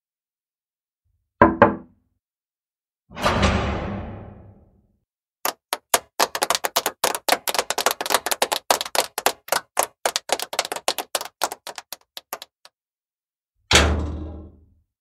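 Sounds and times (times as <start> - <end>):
rapid sharp clicks: 5.5 - 12.7.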